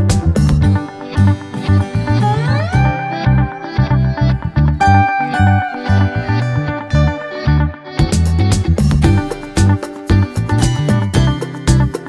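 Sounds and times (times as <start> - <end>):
punchy bass beat: 0.0 - 5.0, 8.0 - 12.0
plucked guitar: 0.0 - 12.0.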